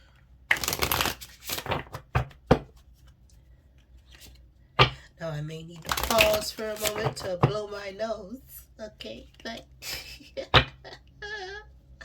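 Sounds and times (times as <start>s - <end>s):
cards being shuffled: 0.4s - 4.5s, 5.8s - 7.5s.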